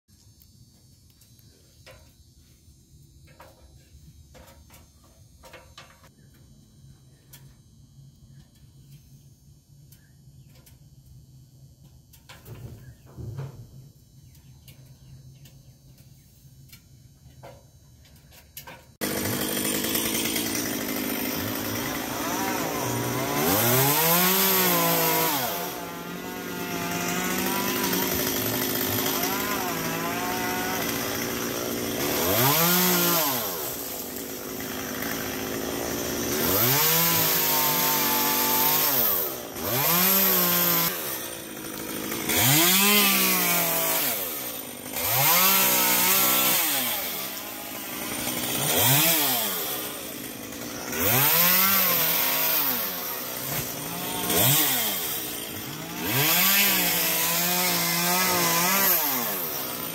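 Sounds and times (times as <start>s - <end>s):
chainsaw revving: 18.9s - 59.9s.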